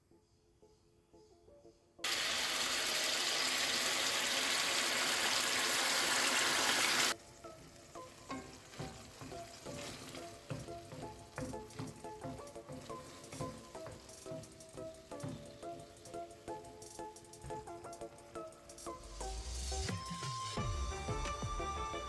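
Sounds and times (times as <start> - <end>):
soft background music: 0.0 - 2.1, 7.1 - 22.0
food sizzling in frying: 2.0 - 20.6.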